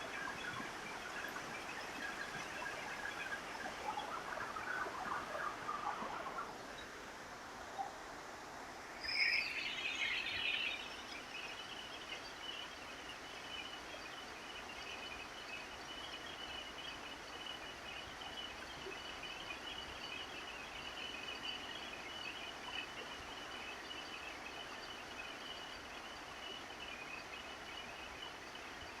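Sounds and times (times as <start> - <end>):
bird chirping: 9.0 - 29.0.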